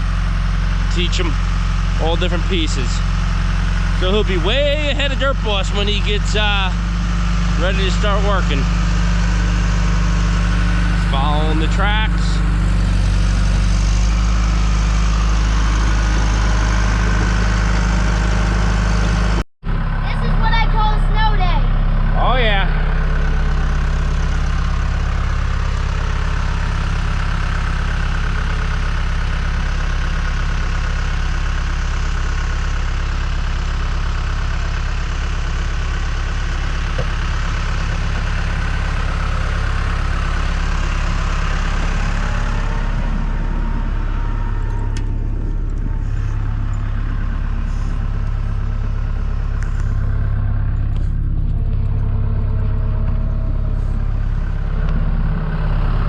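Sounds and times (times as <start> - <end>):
high noisy machine sound: 0.0 - 25.4
diesel engine running: 0.0 - 56.0.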